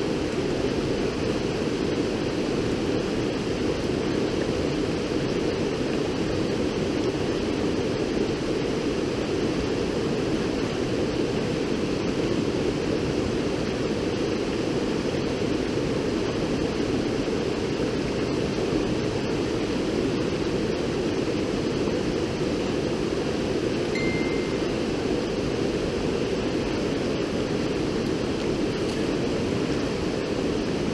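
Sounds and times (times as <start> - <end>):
river water rushing: 23.7 - 30.9.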